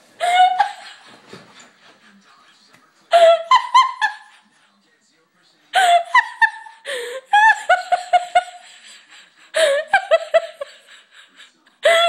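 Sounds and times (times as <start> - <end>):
person giggling: 5.8 - 12.0.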